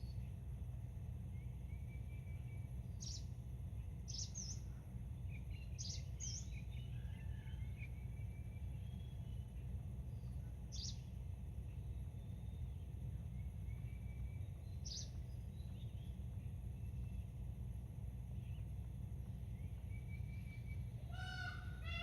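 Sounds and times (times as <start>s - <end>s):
low outdoor rumble: 0.0s - 22.0s
small birds chirping: 0.0s - 22.0s
faint bird warbling: 19.9s - 22.0s.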